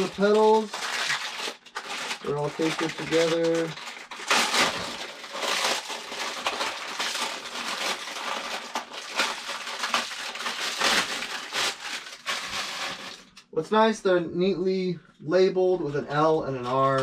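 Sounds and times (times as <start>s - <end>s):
plastic packaging crinkling: 0.0s - 13.5s.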